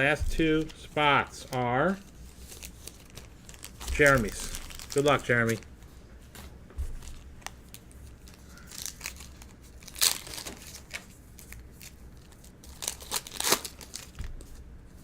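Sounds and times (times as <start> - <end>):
foil wrapper tearing and crinkling: 1.5 - 5.7, 7.7 - 14.2.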